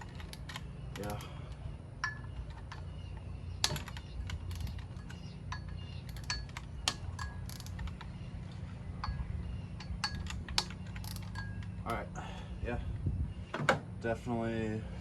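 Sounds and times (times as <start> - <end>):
wrench clicking on bolts: 3.6 - 8.1, 9.8 - 12.0.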